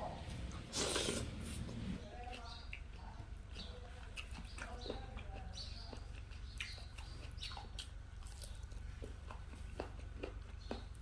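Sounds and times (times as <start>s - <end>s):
steady low hum: 0.0s - 11.0s
wet chewing mouth clicks: 2.2s - 11.0s.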